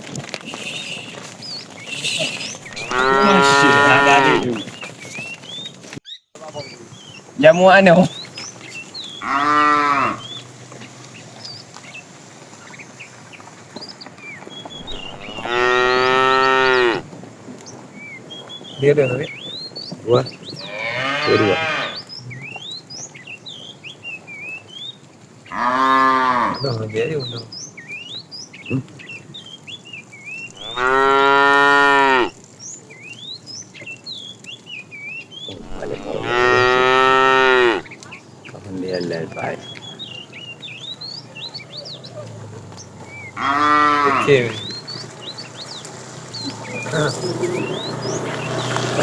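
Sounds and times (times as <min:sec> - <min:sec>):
cow mooing: 0:02.0 - 0:04.6, 0:09.2 - 0:10.3, 0:14.7 - 0:17.1, 0:20.6 - 0:22.0, 0:25.5 - 0:26.7, 0:30.5 - 0:32.3, 0:35.5 - 0:37.9, 0:43.4 - 0:44.6.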